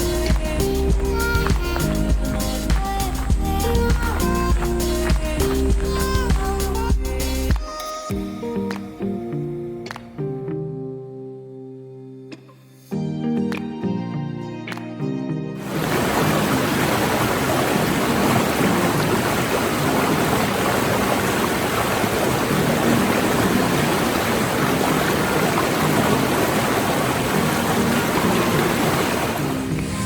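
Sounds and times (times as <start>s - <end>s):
mountain stream rushing: 15.6s - 30.0s.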